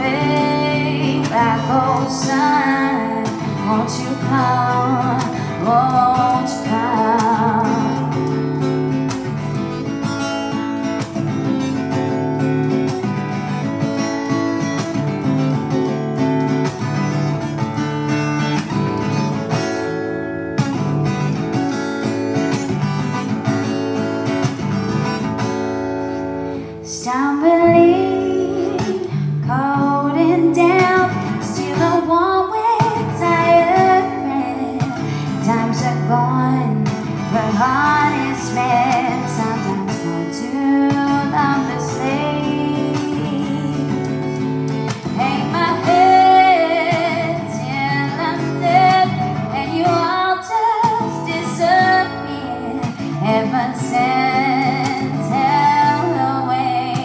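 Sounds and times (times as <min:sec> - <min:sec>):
person singing: 0:00.0 - 0:08.9, 0:27.0 - 0:57.0
acoustic guitar strumming: 0:00.0 - 0:57.0.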